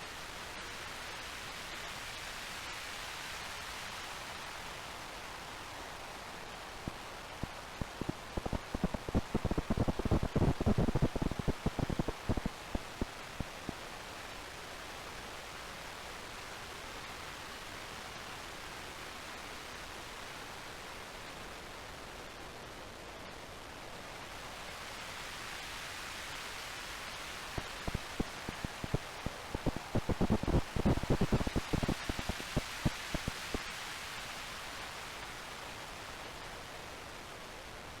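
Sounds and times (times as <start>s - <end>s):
synthetic rain hiss: 0.0s - 38.0s
synthesized thunder thumps and crackles: 8.4s - 13.0s, 27.6s - 33.3s.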